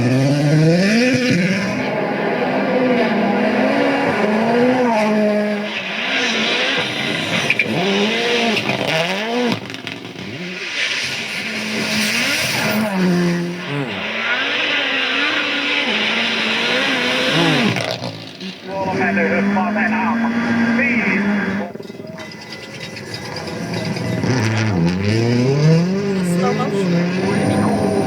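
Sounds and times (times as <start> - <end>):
rally car engines revving: 0.0 - 28.0.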